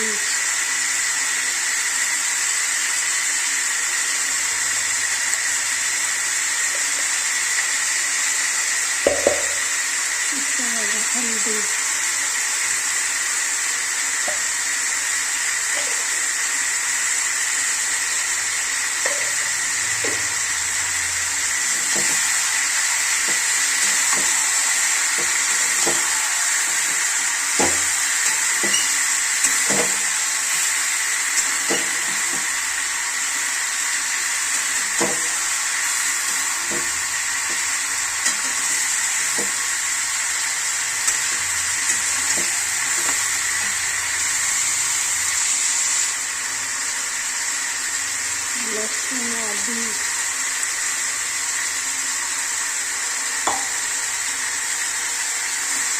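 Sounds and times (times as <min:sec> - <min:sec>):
chicken sizzling in a pan: 0:00.0 - 0:55.9
spatula stirring and knocking pan: 0:09.0 - 0:09.8, 0:21.6 - 0:32.6, 0:34.6 - 0:39.9, 0:41.0 - 0:43.8, 0:53.4 - 0:53.9.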